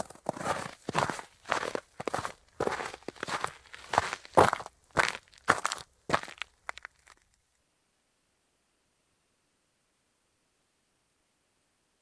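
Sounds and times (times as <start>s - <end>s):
footsteps crunching on snow: 0.0s - 7.2s.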